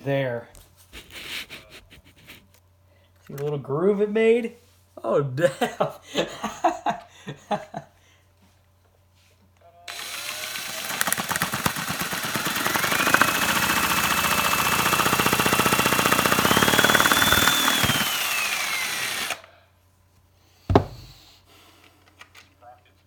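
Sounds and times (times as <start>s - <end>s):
drill motor whine: 9.9s - 19.5s
fast plastic rattle: 10.6s - 13.3s
sharp thump: 20.7s - 21.2s.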